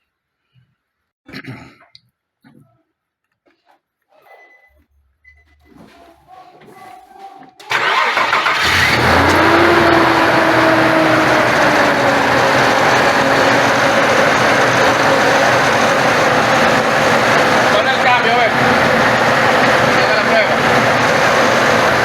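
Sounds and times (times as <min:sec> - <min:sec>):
engine starting and running: 0:07.6 - 0:22.0.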